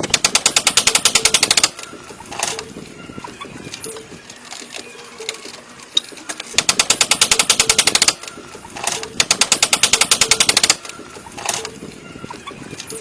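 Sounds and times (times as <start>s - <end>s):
power tool striking rapidly: 6.6s - 8.2s.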